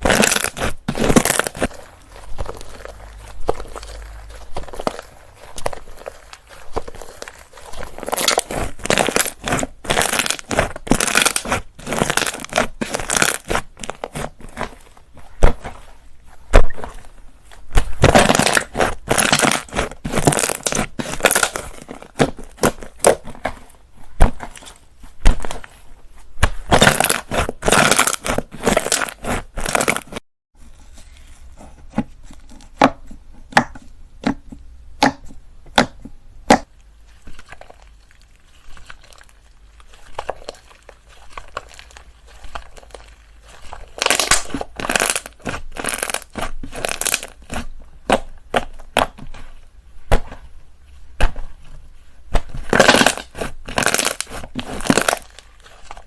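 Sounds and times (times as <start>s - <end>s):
slime crackling and clicking: 0.0s - 14.8s, 37.4s - 49.2s, 52.7s - 55.4s
slime popping: 0.0s - 15.8s, 17.7s - 23.3s, 26.4s - 30.2s, 37.3s - 49.2s, 52.4s - 55.8s.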